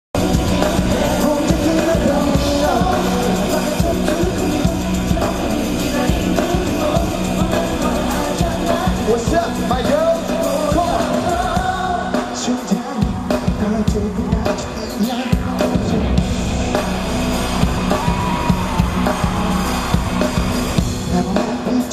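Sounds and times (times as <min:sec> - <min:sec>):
live pop song with singing: 0:00.2 - 0:21.9
steady dance beat: 0:16.8 - 0:21.4.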